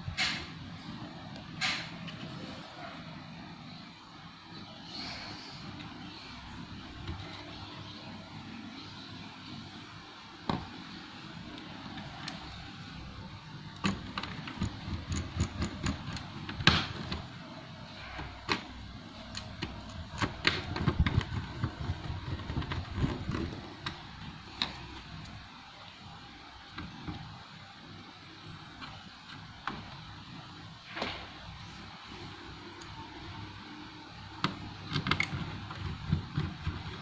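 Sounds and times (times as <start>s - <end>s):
steady background hum: 0.0s - 37.0s.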